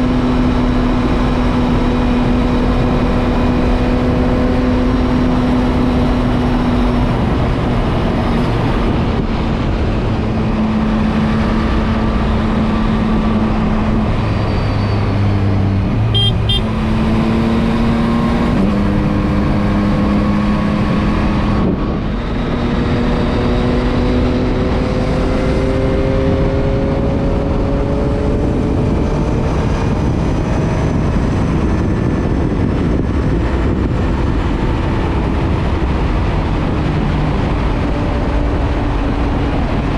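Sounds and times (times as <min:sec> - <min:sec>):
motorcycle engine at speed: 0:00.0 - 0:39.9
wind rush: 0:00.0 - 0:39.9
high beep: 0:16.2 - 0:16.7.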